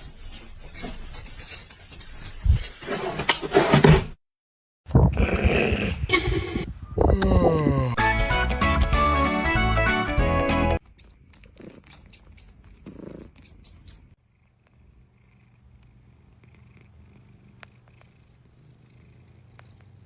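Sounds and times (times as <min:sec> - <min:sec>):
cat purring: 0:12.7 - 0:13.6, 0:14.2 - 0:20.0.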